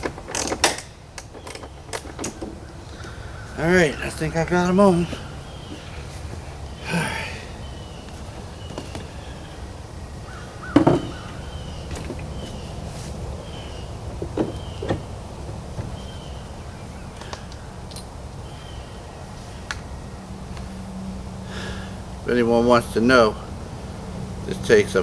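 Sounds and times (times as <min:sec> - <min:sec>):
metal parts knocking and clanking: 0:00.0 - 0:02.6, 0:10.7 - 0:12.7, 0:17.9 - 0:18.2
bird calling: 0:00.0 - 0:25.0.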